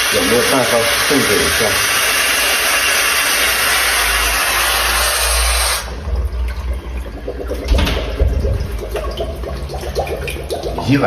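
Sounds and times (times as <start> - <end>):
water hissing in plumbing: 0.0 - 11.0
low plumbing rumble: 5.8 - 11.0.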